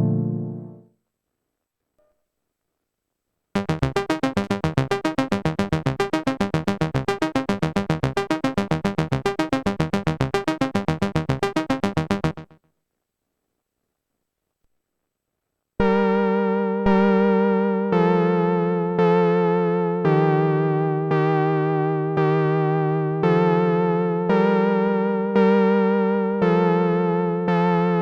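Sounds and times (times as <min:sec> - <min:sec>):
fast repeated synth notes: 0:03.6 - 0:12.6.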